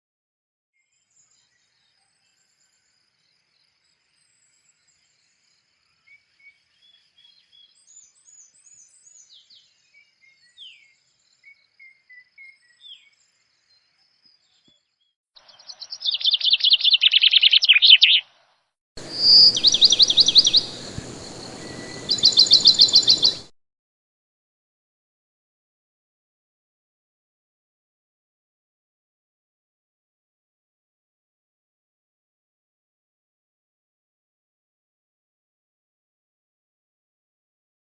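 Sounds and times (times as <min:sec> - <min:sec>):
small birds chirping: 0:01.0 - 0:23.5
rapid bird trills: 0:15.5 - 0:18.3, 0:19.0 - 0:23.5.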